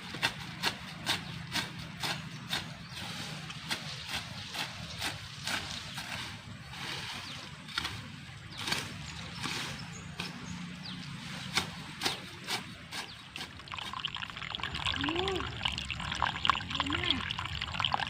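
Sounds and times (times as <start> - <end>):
water trickling and babbling: 12.9 - 18.0.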